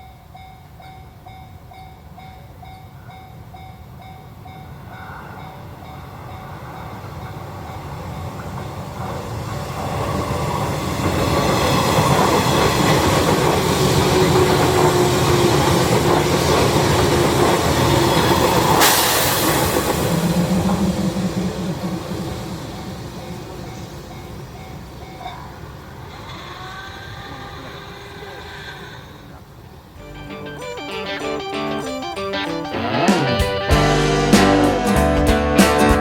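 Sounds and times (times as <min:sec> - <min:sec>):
train wheels clattering on rails: 0:00.0 - 0:25.6
sudden loud rush of noise: 0:08.7 - 0:25.0.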